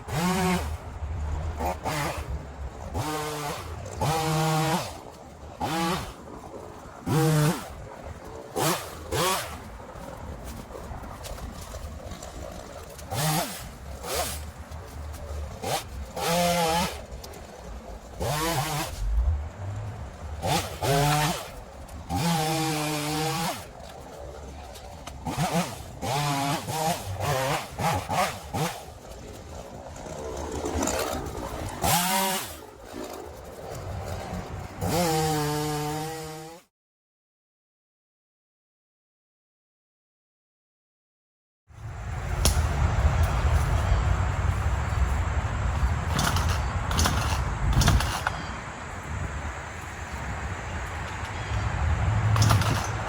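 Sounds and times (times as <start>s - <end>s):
chainsaw engine revving: 0.0s - 0.8s, 1.6s - 2.3s, 2.9s - 5.0s, 5.6s - 6.2s, 7.1s - 7.8s, 8.6s - 9.6s, 13.1s - 14.5s, 15.6s - 17.1s, 18.2s - 19.8s, 20.4s - 23.8s, 25.2s - 28.9s, 30.7s - 33.1s, 34.8s - 36.6s, 46.0s - 48.5s, 52.2s - 53.0s.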